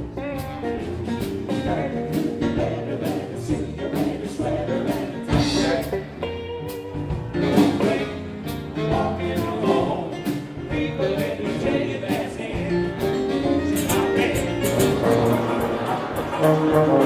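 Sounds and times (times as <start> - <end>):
drums and cymbals beat: 0.0 - 17.0
jazz band playing: 0.0 - 17.0
person singing: 8.8 - 17.0.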